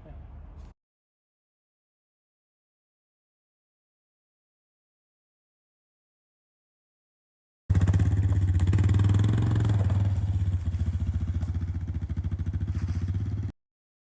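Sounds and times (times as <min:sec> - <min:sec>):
two-stroke chainsaw engine running: 0:07.7 - 0:13.5.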